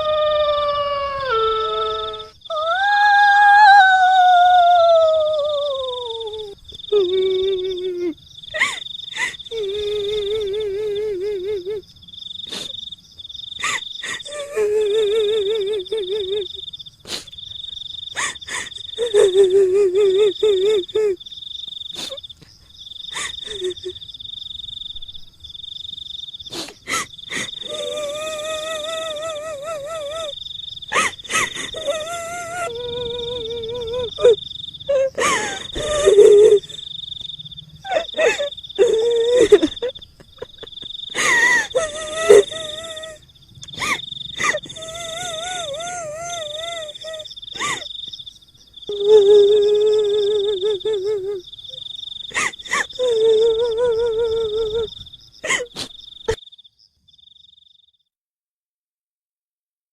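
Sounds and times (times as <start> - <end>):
crickets chirping: 0.0 - 58.1.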